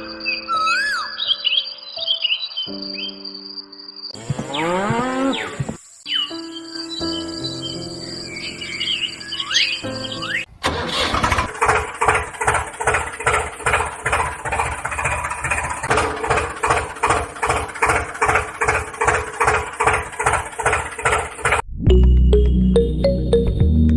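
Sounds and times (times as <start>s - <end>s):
birdsong: 0.0s - 10.5s
insects: 1.2s - 10.2s
engine chugging: 10.6s - 21.6s.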